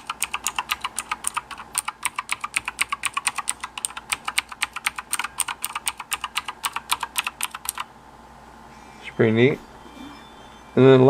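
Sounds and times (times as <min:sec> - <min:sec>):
mechanical keyboard key clicks: 0:00.0 - 0:07.9.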